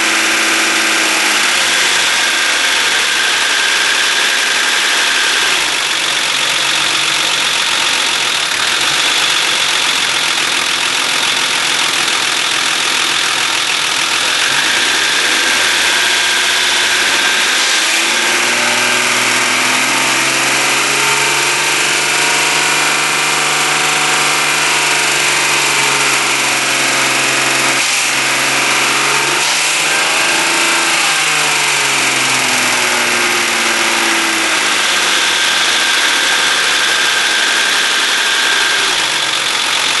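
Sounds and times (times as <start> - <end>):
car engine running: 0.0 - 40.0.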